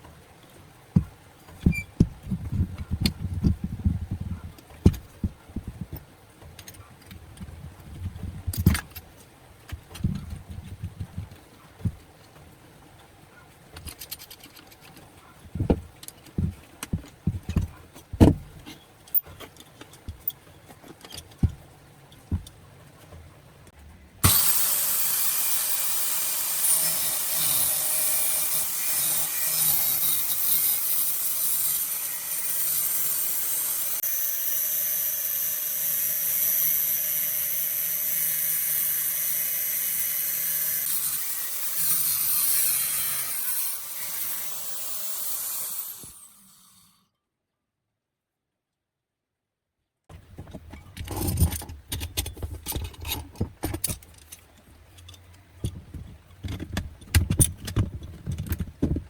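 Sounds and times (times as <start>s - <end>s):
parts and tools handled on bench: 0.0s - 23.9s, 50.1s - 59.0s
power tool running: 24.2s - 46.9s.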